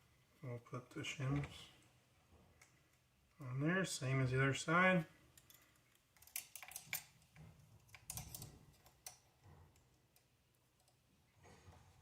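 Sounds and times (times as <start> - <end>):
small parts clicking: 5.3 - 11.0.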